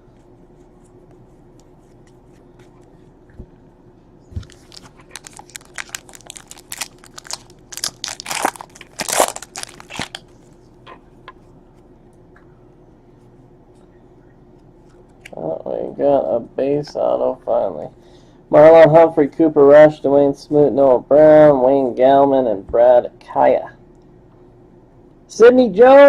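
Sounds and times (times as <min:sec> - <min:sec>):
card pack wrapper tearing and crinkling: 0:04.4 - 0:10.3.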